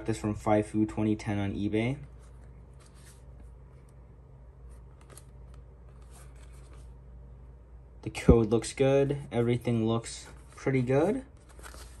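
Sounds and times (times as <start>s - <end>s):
low steady hum: 0.0s - 12.0s
cardboard and plastic rustling: 10.0s - 12.0s.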